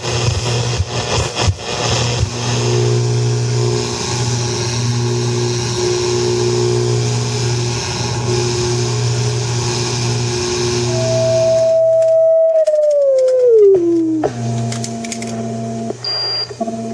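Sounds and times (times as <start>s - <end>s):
low radio hum: 0.0s - 16.9s
high radio tones: 10.4s - 16.9s.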